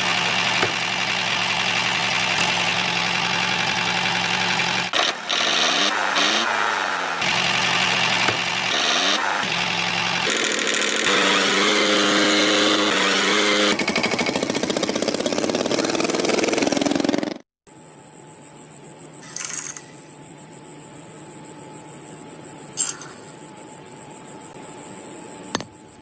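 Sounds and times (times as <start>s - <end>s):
small engine droning: 0.0s - 17.4s.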